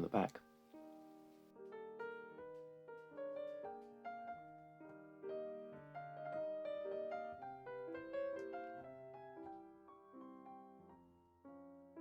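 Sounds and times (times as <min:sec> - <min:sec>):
soft piano music: 0:00.0 - 0:12.0.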